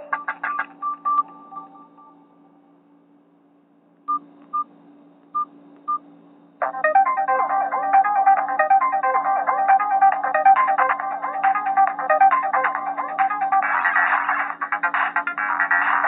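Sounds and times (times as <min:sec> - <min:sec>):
phone ringtone melody: 0:00.0 - 0:02.2, 0:06.6 - 0:16.0
low steady hum: 0:00.0 - 0:16.0.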